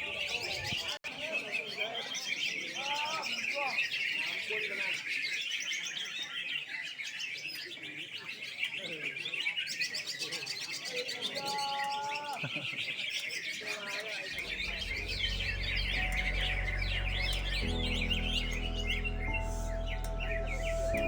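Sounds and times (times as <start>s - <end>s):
birds chirping and warbling: 0.0s - 21.0s
background music: 14.4s - 21.0s.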